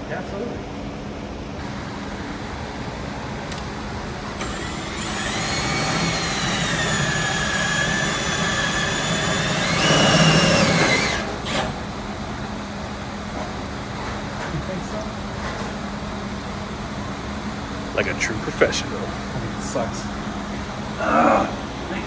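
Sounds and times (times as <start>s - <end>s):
electric motor whining: 1.6s - 11.9s.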